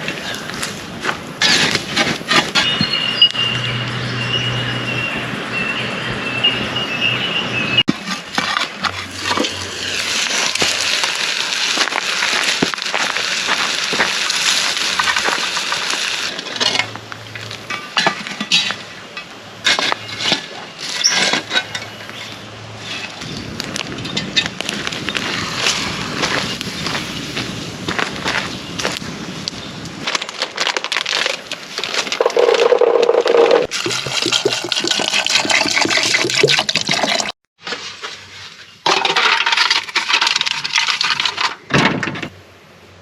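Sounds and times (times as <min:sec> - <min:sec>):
campfire crackling and hissing: 0:08.8 - 0:17.7, 0:23.0 - 0:32.0.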